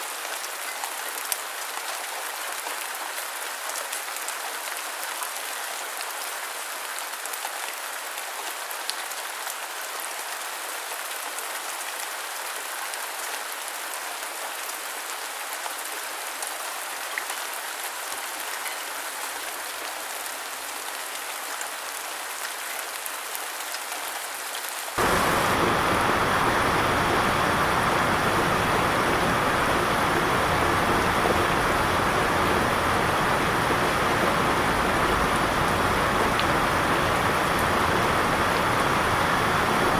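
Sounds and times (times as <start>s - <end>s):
rain falling: 20.3s - 39.9s
rain drops ticking: 25.0s - 39.9s.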